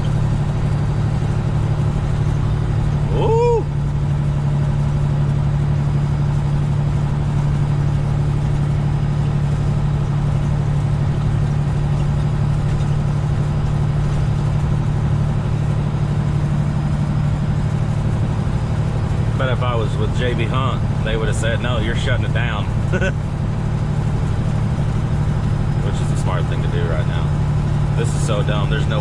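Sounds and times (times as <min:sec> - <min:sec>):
diesel engine droning in cab: 0:00.0 - 0:29.0.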